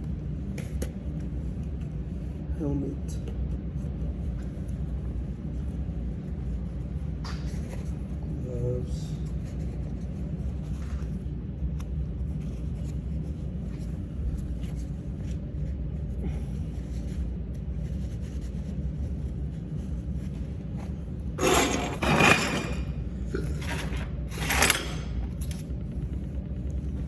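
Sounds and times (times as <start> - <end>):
shop background rumble: 21.2 - 26.0
loud scraping noises: 21.4 - 25.2.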